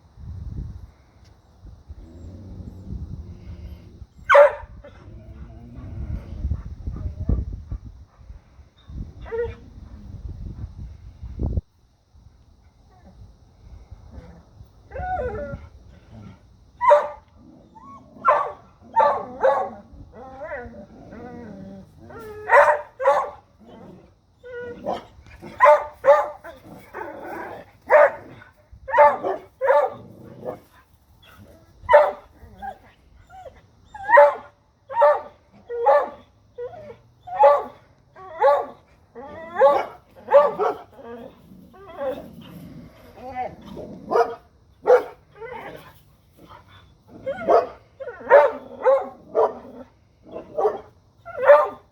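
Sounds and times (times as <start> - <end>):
dogs barking: 4.3 - 4.7, 16.8 - 17.2, 18.2 - 19.8, 22.5 - 23.4, 24.9 - 26.4, 27.9 - 28.3, 28.9 - 30.0, 31.9 - 32.2, 34.1 - 36.2, 37.4 - 37.8, 38.4 - 38.8, 39.6 - 40.9, 44.1 - 45.2, 47.2 - 49.7, 50.3 - 51.8.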